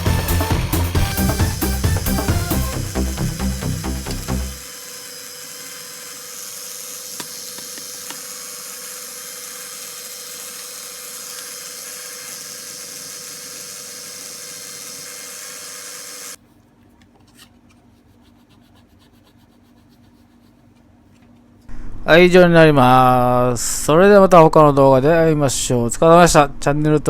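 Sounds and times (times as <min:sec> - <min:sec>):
electric drill grinding: 0:00.0 - 0:16.4.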